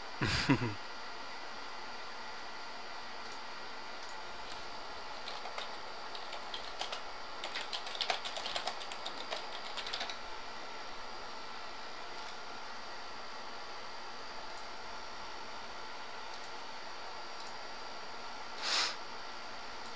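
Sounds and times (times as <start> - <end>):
keyboard typing: 4.0 - 10.2.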